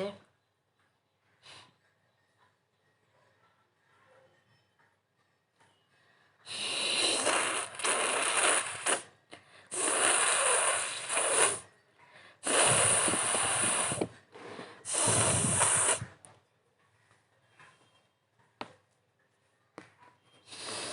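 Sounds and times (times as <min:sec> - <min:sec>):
person blowing through nose: 0:06.5 - 0:09.1, 0:09.7 - 0:11.7, 0:12.4 - 0:16.2, 0:20.5 - 0:20.9.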